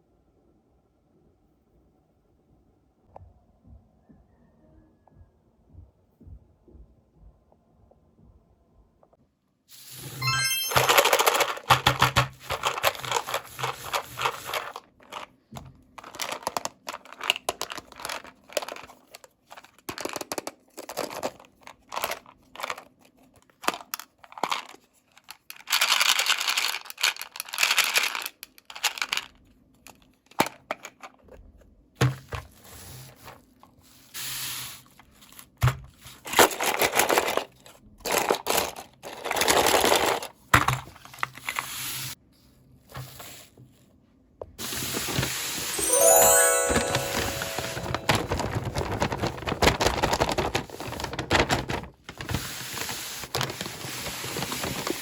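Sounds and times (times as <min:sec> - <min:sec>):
packaging crinkling and rustling: 0:47.4 - 0:55.0.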